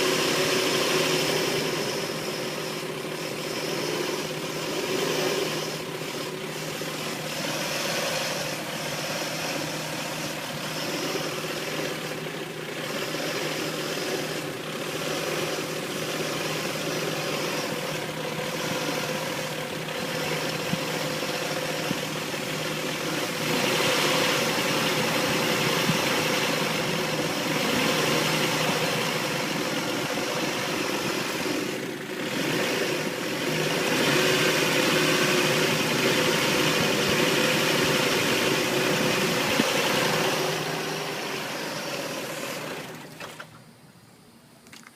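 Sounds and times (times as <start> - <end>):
engine idling rough: 0.0 - 43.9.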